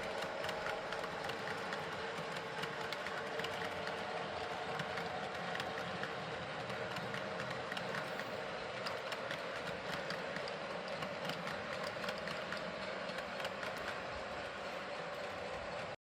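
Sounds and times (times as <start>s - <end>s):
light clicks of track: 0.0s - 16.0s
model locomotive humming: 0.0s - 16.0s.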